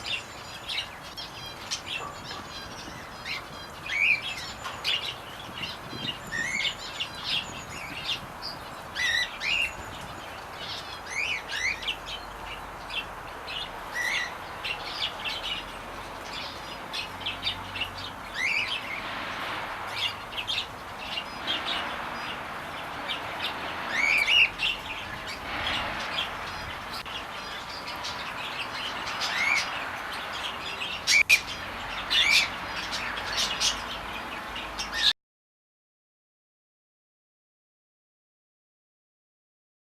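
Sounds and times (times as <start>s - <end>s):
small birds chirping: 0.0s - 35.2s.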